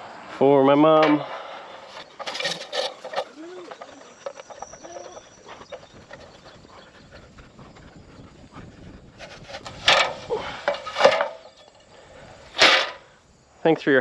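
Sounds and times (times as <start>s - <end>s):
ladder scraping clatter: 0.8s - 6.3s, 9.2s - 11.8s, 12.5s - 13.0s
faint rustling: 1.0s - 13.2s.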